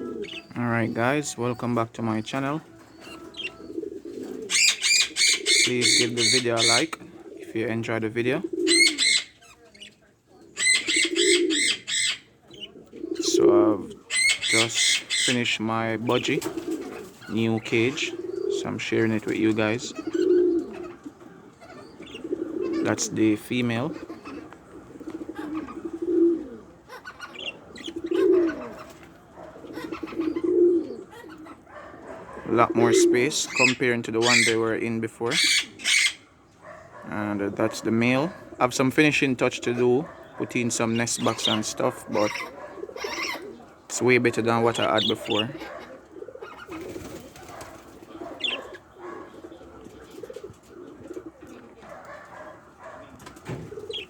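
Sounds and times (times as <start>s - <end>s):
pigeon cooing: 0.0s - 54.0s.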